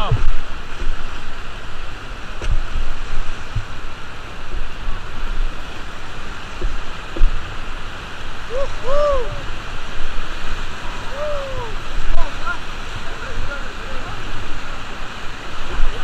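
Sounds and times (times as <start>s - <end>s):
low thumps: 0.0s - 5.6s, 6.4s - 7.8s
river rapids rushing: 0.0s - 16.0s.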